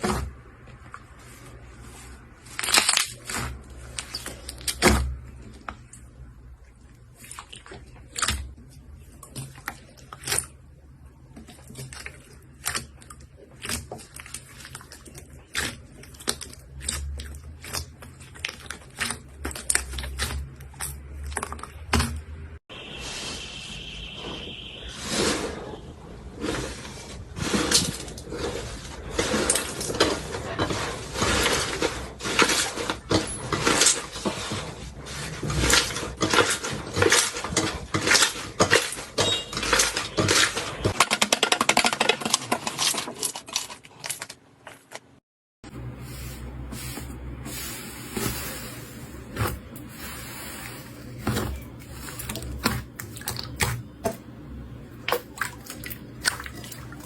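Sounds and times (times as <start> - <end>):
slime squishing: 0.0 - 22.3, 45.7 - 57.0
crunchy slime crackling and popping: 2.4 - 5.0.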